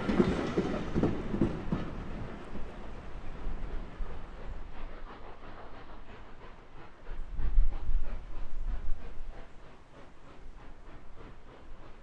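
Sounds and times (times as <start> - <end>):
wind buffeting microphone: 0.0 - 9.5
low rumble of passing train: 0.0 - 12.0.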